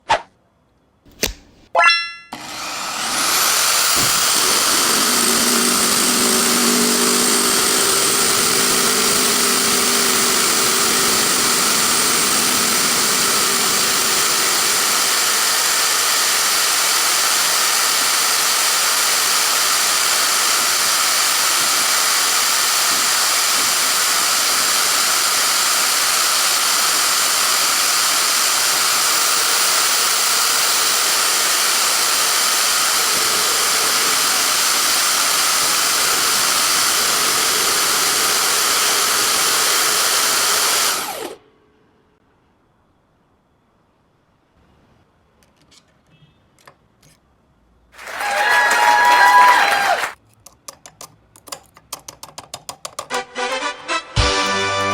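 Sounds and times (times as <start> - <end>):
power drill whine: 2.3 - 41.4, 48.0 - 50.2.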